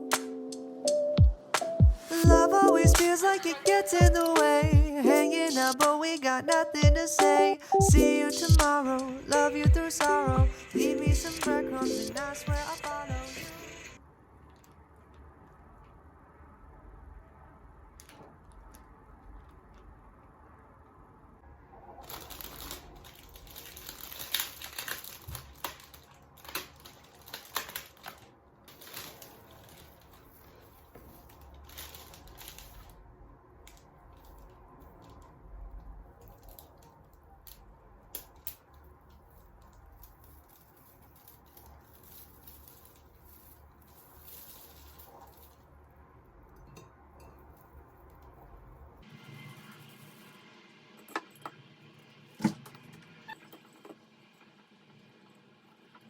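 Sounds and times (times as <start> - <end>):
crackling and clicking of handling: 14.3 - 16.1, 17.9 - 21.0, 22.1 - 45.8.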